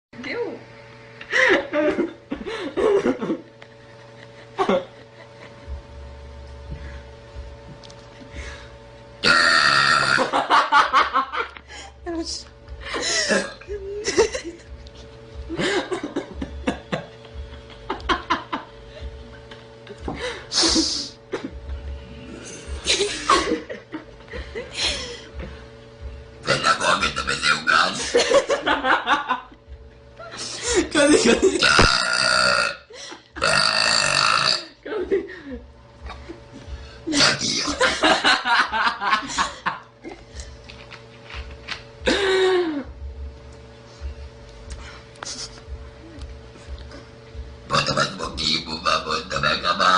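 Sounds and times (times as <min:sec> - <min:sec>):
laughter and snickering: 0:01.2 - 0:05.8, 0:10.2 - 0:11.9, 0:12.9 - 0:14.8, 0:15.5 - 0:19.1, 0:22.6 - 0:25.4, 0:28.0 - 0:29.6, 0:30.2 - 0:31.6, 0:34.8 - 0:42.9
person burping: 0:09.2 - 0:10.4, 0:31.5 - 0:34.8, 0:47.7 - 0:49.9.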